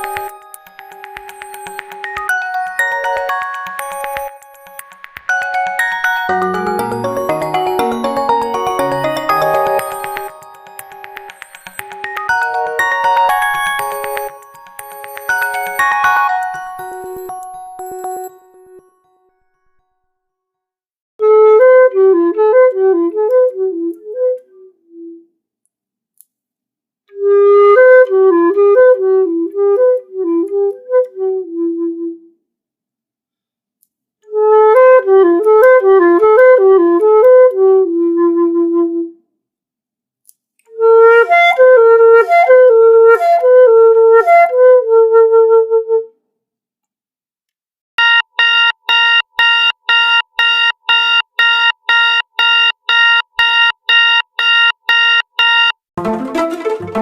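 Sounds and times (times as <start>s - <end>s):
repeating electronic beeps: 0.0s - 18.3s, 48.0s - 55.8s
flute-like ringtone melody: 0.0s - 19.5s, 55.6s - 57.0s.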